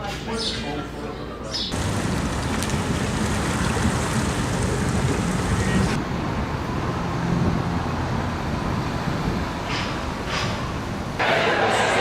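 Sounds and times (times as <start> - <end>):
engine or traffic rumble and hiss: 1.7 - 11.2.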